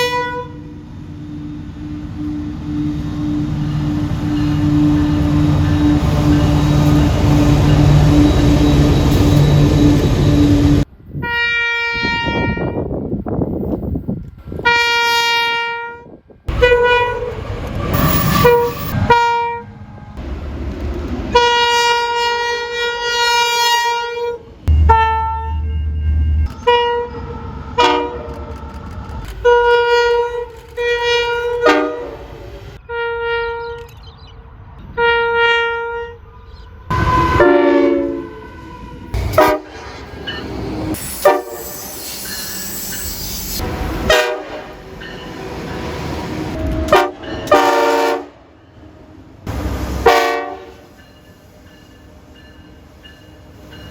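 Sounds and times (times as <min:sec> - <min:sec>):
train running noise: 0:00.0 - 0:11.2, 0:16.1 - 0:32.8, 0:36.2 - 0:53.9
train horn blasts: 0:00.0 - 0:12.9, 0:14.5 - 0:20.2, 0:21.3 - 0:28.5, 0:29.4 - 0:33.9, 0:35.0 - 0:36.3, 0:36.9 - 0:39.9, 0:41.0 - 0:41.9, 0:42.7 - 0:44.9, 0:46.5 - 0:51.1.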